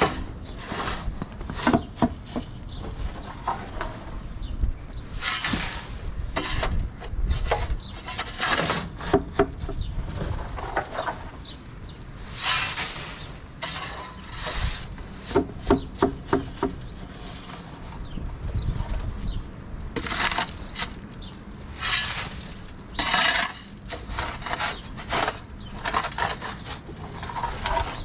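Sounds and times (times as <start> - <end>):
shovel scraping and scooping grain: 0.0 - 2.4, 5.1 - 9.4, 12.2 - 18.2, 20.0 - 28.0.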